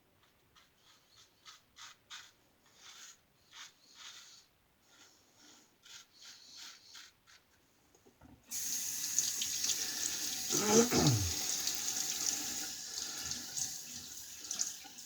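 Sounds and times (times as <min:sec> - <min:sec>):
razor scratching stubble: 0:10.5 - 0:11.5.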